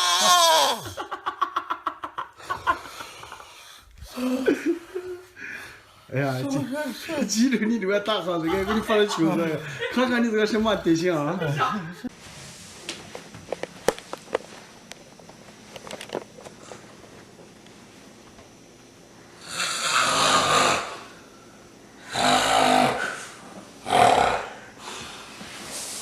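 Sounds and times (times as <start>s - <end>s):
person snoring: 19.4s - 21.2s, 22.0s - 25.2s.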